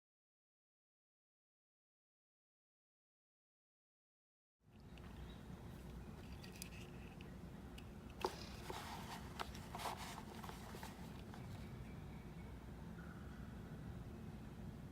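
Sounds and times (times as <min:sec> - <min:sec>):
low background hum: 0:04.6 - 0:14.9
packaging rustling: 0:08.2 - 0:11.7.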